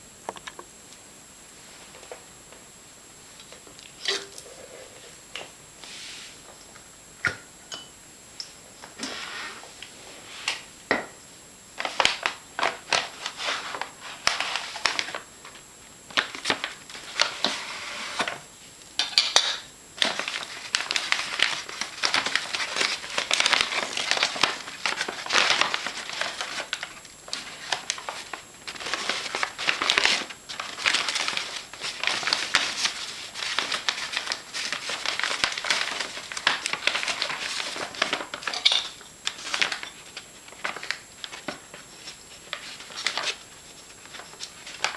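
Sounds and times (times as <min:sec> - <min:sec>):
paper bag crinkling: 0:20.0 - 0:44.9.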